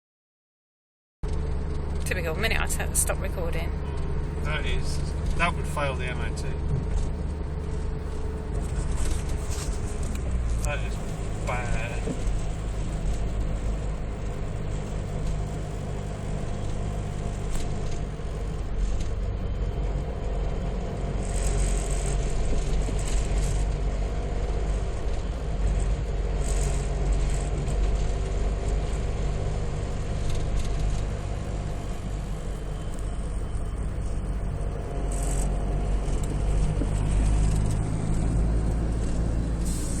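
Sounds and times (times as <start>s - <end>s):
vehicle engine rumble: 1.2s - 40.0s
brief hisses: 39.6s - 40.0s.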